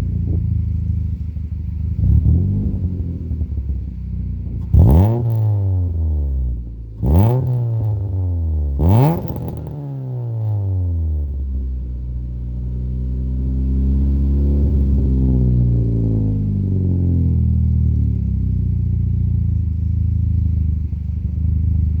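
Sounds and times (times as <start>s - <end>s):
car engine revving: 1.9s - 11.5s.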